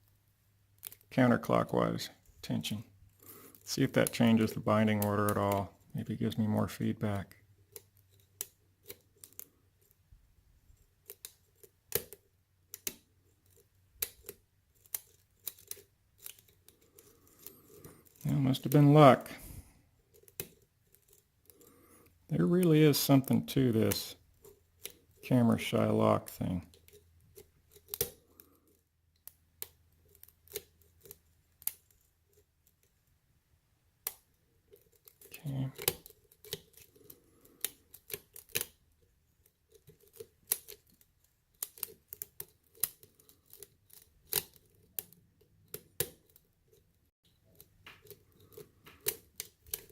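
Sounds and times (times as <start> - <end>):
lock pick clicking in lock: 11.0 - 18.2, 26.8 - 31.9, 34.8 - 38.8, 41.5 - 46.8, 47.5 - 49.9.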